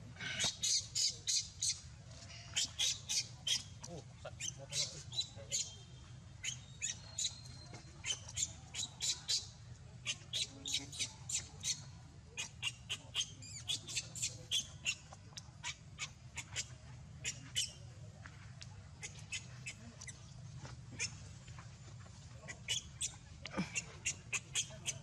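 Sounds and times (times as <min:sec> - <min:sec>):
baby monkey distress squeaks: 0:10.1 - 0:11.8.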